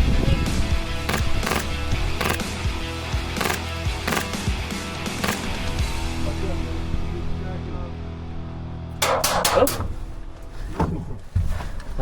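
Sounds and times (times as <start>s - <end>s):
sharp drum hits: 9.0s - 10.0s.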